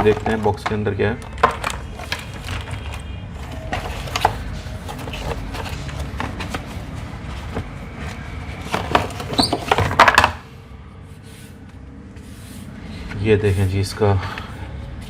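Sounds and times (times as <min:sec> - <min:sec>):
cardboard packaging rustling: 0:00.0 - 0:10.4.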